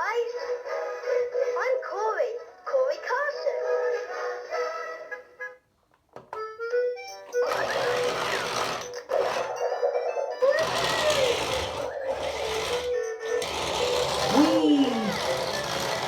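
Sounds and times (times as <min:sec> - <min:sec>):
toy car electronic tune: 0:07.1 - 0:16.0
small electric motor whirring: 0:07.4 - 0:09.6, 0:10.5 - 0:16.0.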